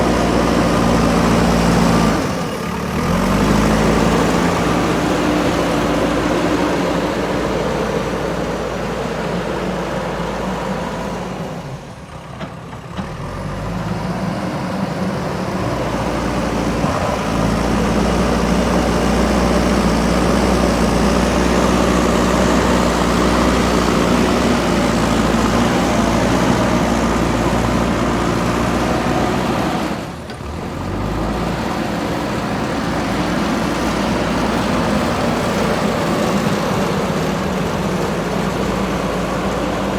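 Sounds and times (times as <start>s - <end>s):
diesel engine running under load: 0.0s - 39.9s.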